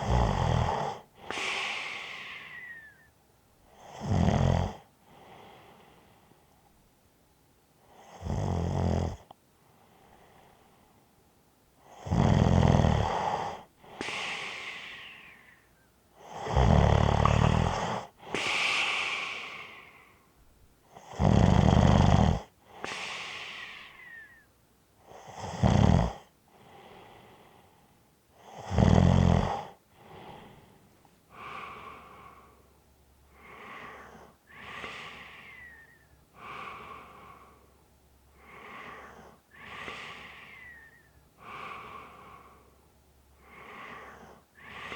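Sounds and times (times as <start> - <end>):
person snoring: 0.0 - 3.0, 3.8 - 5.4, 11.9 - 15.6, 16.2 - 20.2, 21.0 - 24.4, 25.1 - 27.2, 28.4 - 30.6, 43.4 - 44.9
whistling out-breath: 1.3 - 3.1, 14.0 - 15.9, 18.4 - 20.1, 22.9 - 24.5, 35.2 - 36.1, 40.1 - 41.2
soft quick breathing: 18.3 - 20.3.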